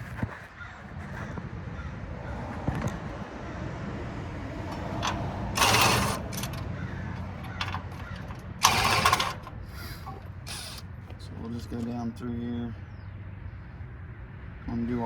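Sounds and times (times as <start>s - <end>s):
socket wrench rasping: 4.6s - 11.2s
small clicks: 4.7s - 11.2s.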